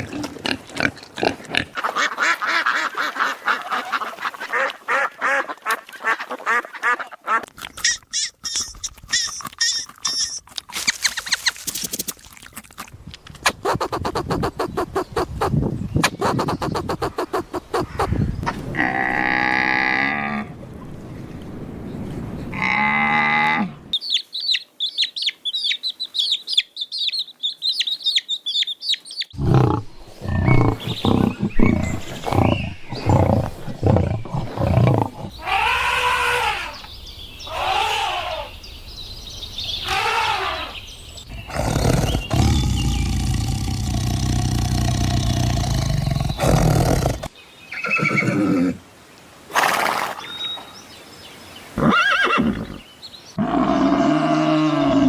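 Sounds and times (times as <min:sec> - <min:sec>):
rising and falling animal calls: 0:13.5 - 0:20.6, 0:29.2 - 0:38.6, 0:39.8 - 0:48.8, 0:53.4 - 0:55.0
long steady animal call: 0:29.3 - 0:38.7, 0:39.8 - 0:48.9
short loud animal calls: 0:35.3 - 0:36.8, 0:37.5 - 0:38.5.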